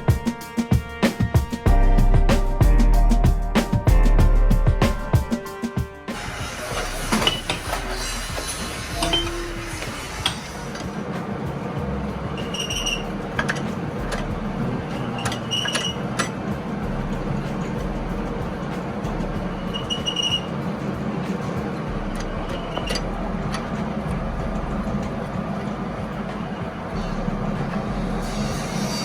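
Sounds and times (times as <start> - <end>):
short metallic pings: 9.0 - 10.4.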